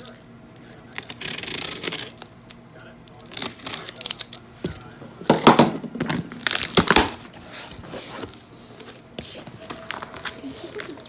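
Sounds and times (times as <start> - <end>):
packaging crackling and tearing: 3.2 - 5.0, 6.1 - 8.2.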